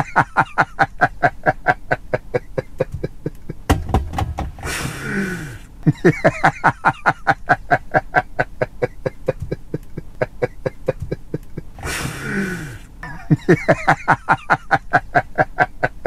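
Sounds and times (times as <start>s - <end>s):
man laughing hard: 0.0s - 3.8s, 4.6s - 16.0s
wheezing breath in: 4.6s - 5.7s, 11.8s - 13.0s.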